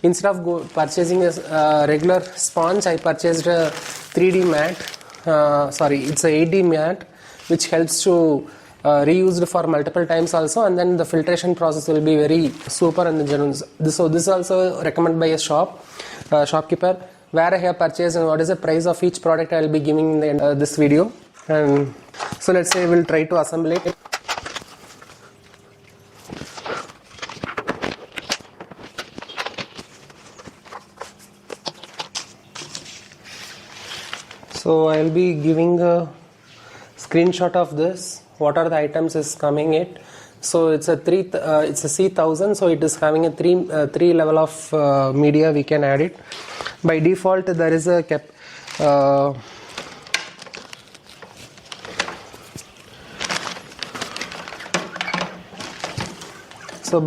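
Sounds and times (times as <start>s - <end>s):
packaging rustling: 0.2s - 8.2s, 9.1s - 14.6s, 21.2s - 35.4s, 48.5s - 57.0s
plastic parts clicking and knocking: 53.2s - 57.0s.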